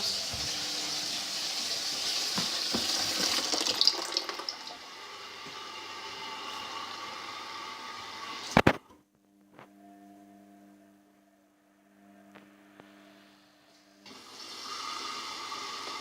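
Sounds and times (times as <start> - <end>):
water rushing into washing machine: 0.0 - 8.6, 14.0 - 16.0.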